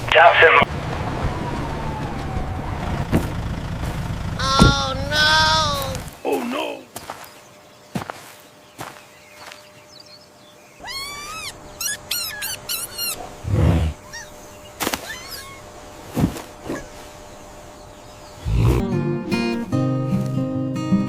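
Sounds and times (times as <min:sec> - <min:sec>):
animal high squealing calls: 0:10.8 - 0:15.8.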